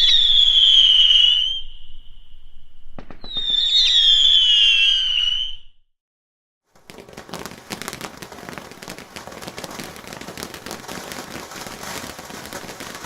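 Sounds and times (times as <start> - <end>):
whistling fireworks: 0.0 - 5.9, 6.8 - 13.0
firework cracks: 3.0 - 4.2, 6.7 - 13.0.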